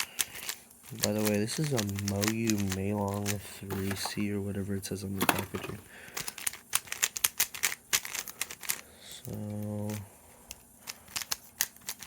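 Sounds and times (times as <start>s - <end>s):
speed cube plastic clicks: 0.0s - 3.4s, 6.2s - 8.8s, 10.8s - 12.0s.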